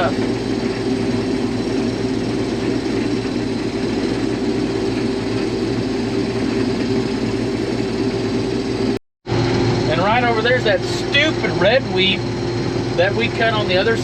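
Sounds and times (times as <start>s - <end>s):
combine engine and threshing drone: 0.0s - 14.0s
low hums: 0.0s - 14.0s.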